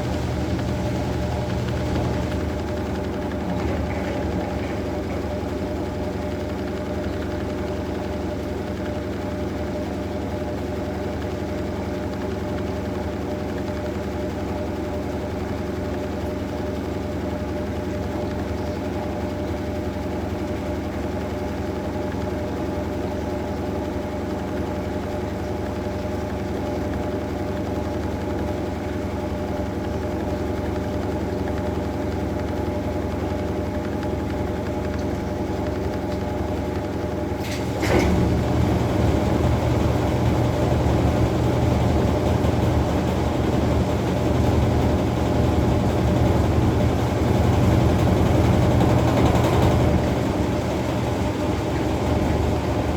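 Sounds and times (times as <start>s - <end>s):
washing machine motor hum: 0.0s - 52.9s
washing machine click: 37.4s - 40.0s.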